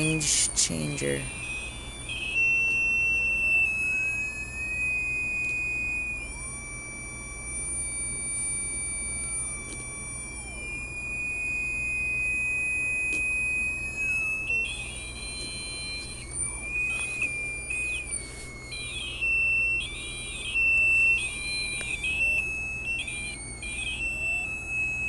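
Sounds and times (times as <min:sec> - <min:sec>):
shrill electronic tone: 0:00.0 - 0:25.0.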